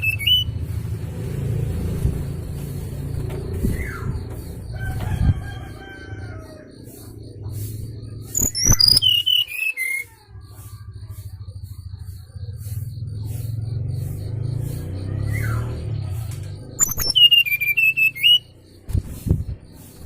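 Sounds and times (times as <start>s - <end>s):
whistled bird call: 0.0s - 0.6s, 8.3s - 11.5s, 14.7s - 18.6s.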